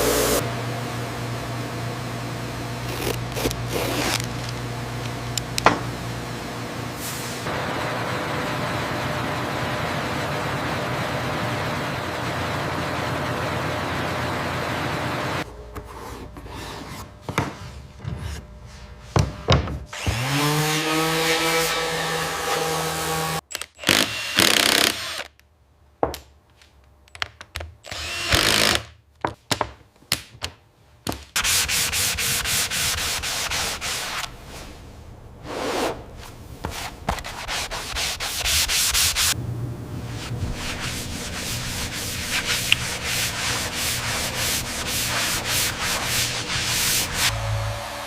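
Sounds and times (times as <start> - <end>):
woodworking machine rasping: 0.0 - 0.4, 40.3 - 48.0.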